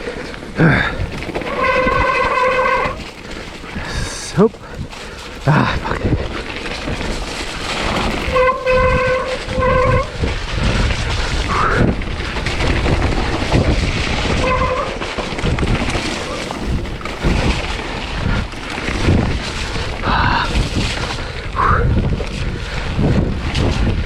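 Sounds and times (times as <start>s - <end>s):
bike ride rumble: 0.0s - 24.0s
wind buffeting: 0.0s - 24.0s
short pitched squeals: 1.5s - 3.0s.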